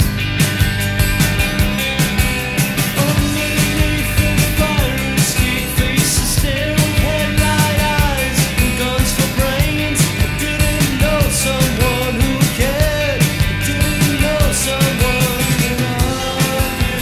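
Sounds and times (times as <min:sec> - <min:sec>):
rock song from vinyl record: 0:00.0 - 0:17.0
person singing: 0:02.8 - 0:17.0.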